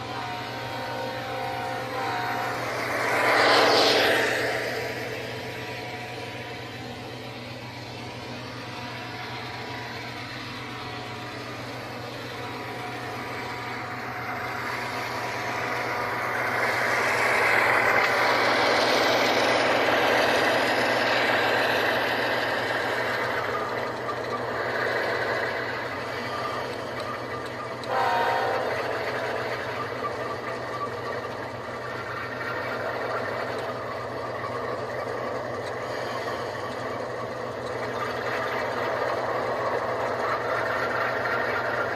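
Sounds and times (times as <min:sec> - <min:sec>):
model diesel locomotive sounds: 0:00.0 - 0:41.9
steady low hum: 0:00.0 - 0:41.9.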